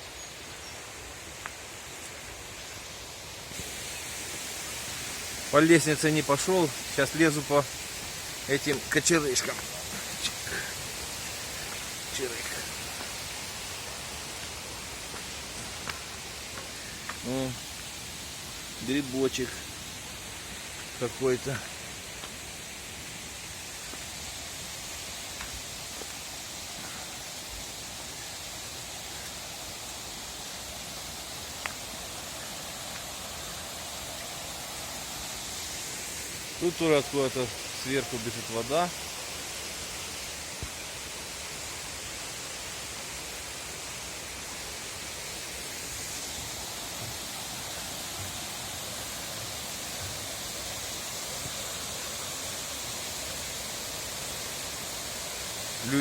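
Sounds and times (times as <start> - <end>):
mountain stream rushing: 0.0 - 56.0.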